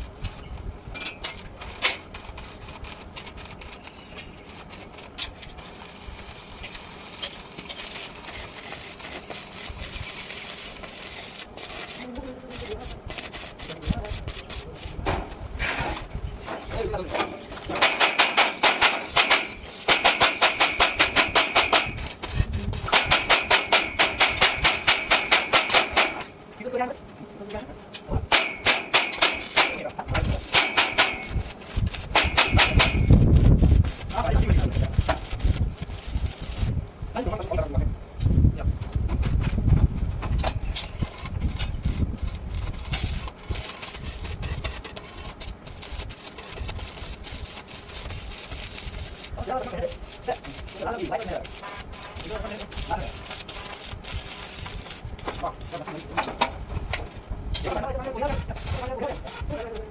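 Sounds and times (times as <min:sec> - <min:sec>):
welding arc crackling: 0:00.0 - 0:26.9, 0:28.2 - 0:38.4, 0:40.4 - 0:56.2, 0:57.5 - 0:59.9
hammer striking steel: 0:17.7 - 0:22.0, 0:28.3 - 0:29.9, 0:30.5 - 0:31.4.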